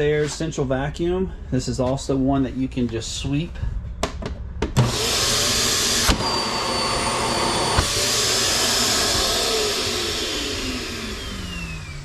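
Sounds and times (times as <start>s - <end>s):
vacuum suction rush: 4.9s - 12.0s.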